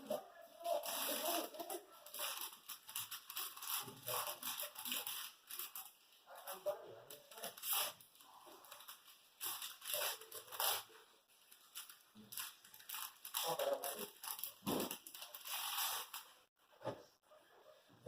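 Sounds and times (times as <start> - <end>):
packaging crinkling: 7.2 - 16.4.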